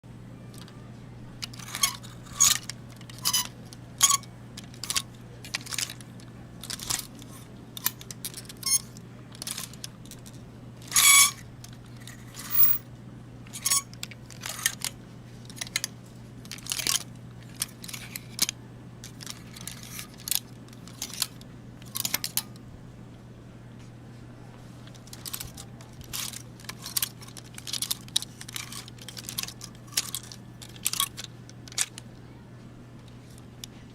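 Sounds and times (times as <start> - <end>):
steady low hum: 0.1 - 33.9
metal hangers scraping on rail: 12.1 - 12.8, 13.6 - 13.9.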